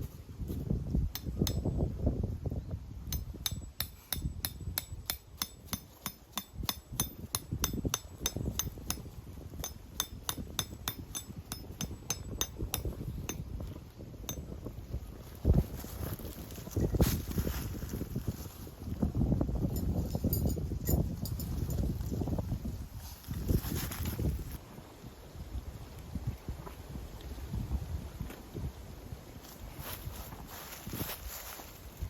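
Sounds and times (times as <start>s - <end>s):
wind rumble on microphone: 0.0s - 32.0s
tent pegs being hammered: 1.1s - 1.8s, 3.1s - 14.6s.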